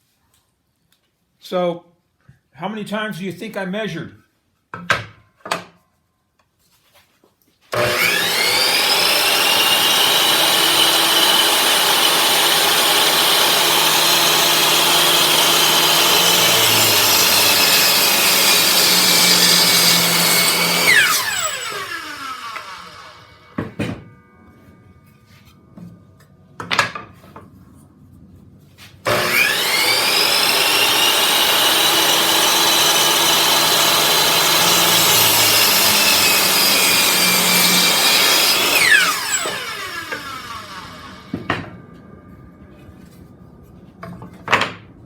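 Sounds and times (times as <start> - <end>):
electric saw cutting wood: 7.7 - 24.1, 29.0 - 41.7
saw blade spinning down: 7.7 - 24.4, 29.0 - 41.5.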